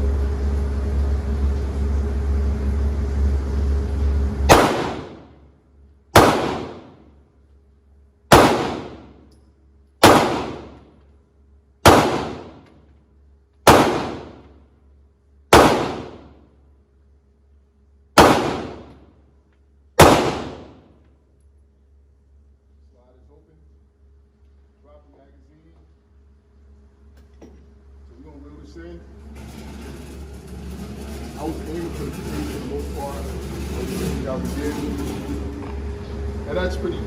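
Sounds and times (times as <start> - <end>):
steady low hum: 0.0 - 37.0
pistol shots with echo: 4.5 - 5.4, 6.2 - 7.1, 8.3 - 9.2, 10.0 - 10.9, 11.8 - 12.7, 13.7 - 14.5, 15.5 - 16.4, 18.2 - 19.0, 20.0 - 20.8.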